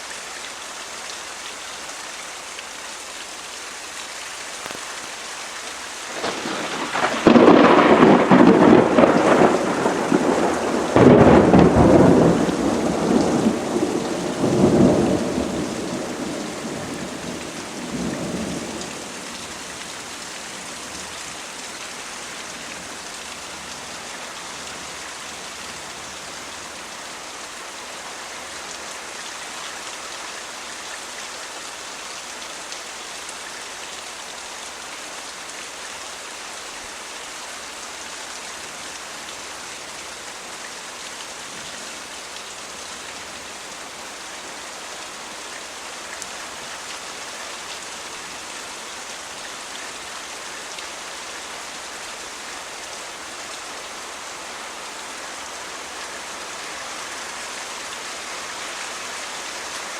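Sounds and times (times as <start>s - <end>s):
heavy rain: 0.0s - 59.9s
thunder cracking and rumbling: 6.1s - 17.2s.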